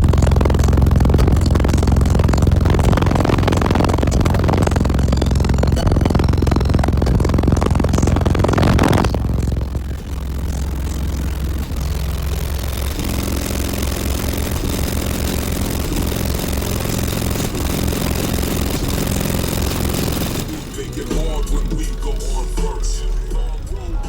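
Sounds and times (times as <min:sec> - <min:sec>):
car engine idling: 0:00.0 - 0:24.0.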